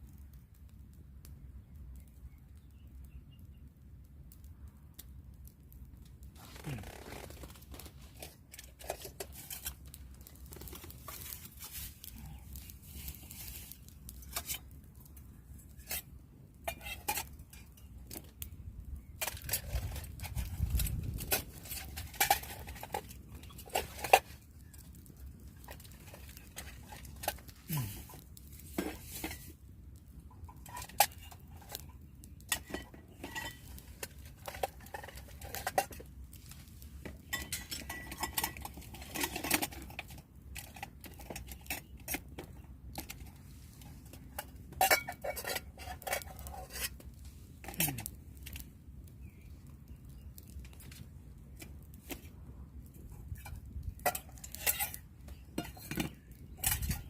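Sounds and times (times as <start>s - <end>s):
metal cookware and cutlery clinking: 16.6s - 17.9s, 32.5s - 36.0s, 37.2s - 42.2s, 44.1s - 46.9s, 53.4s - 57.0s.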